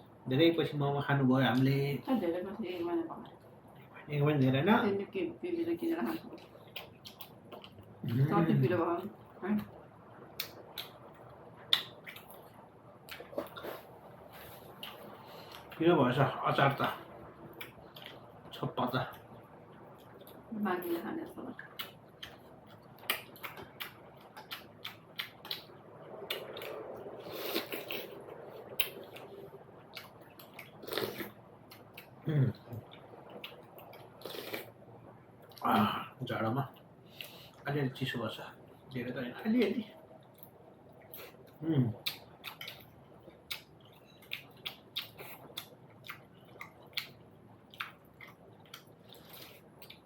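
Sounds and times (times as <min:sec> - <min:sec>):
wet chewing and mouth smacks: 0:06.3 - 0:08.0, 0:09.6 - 0:15.8, 0:16.8 - 0:18.4, 0:21.6 - 0:35.7, 0:40.2 - 0:50.0.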